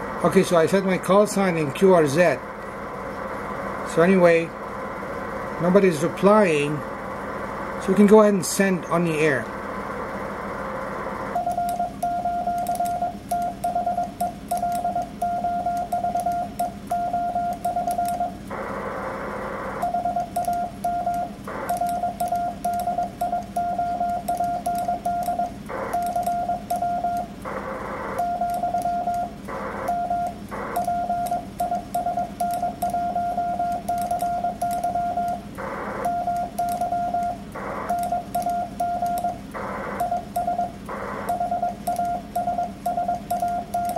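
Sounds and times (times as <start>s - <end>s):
morse code sidetone beeping: 11.4s - 18.4s, 19.8s - 43.9s.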